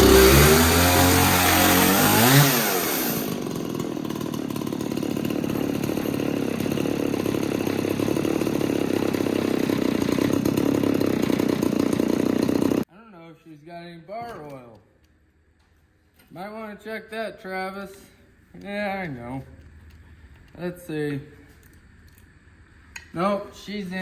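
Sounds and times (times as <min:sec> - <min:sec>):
chainsaw revving and idling: 0:00.0 - 0:12.9.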